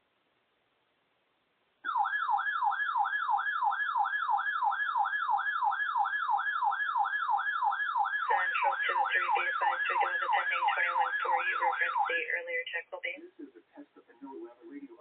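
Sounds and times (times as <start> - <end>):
electronic siren alert tone: 1.9 - 12.4.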